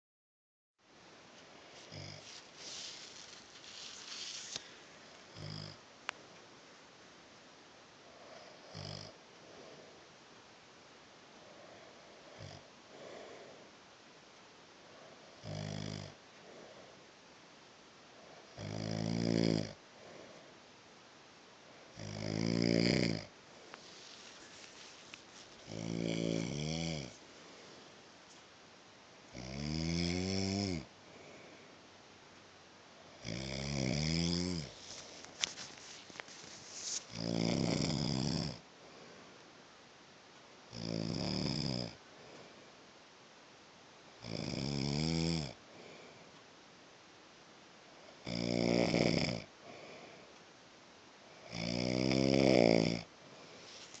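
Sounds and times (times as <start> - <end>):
quiet breathing: 1.0 - 29.6, 30.2 - 39.6, 40.4 - 43.1, 45.4 - 54.0
man snoring: 1.8 - 4.6, 5.3 - 5.8, 8.3 - 9.2, 12.3 - 13.4, 15.3 - 16.2, 18.5 - 19.8, 22.0 - 23.3, 25.6 - 27.2, 29.3 - 30.9, 33.1 - 34.8, 37.0 - 38.6, 40.7 - 42.0, 44.2 - 45.6, 48.2 - 49.9, 51.4 - 53.1.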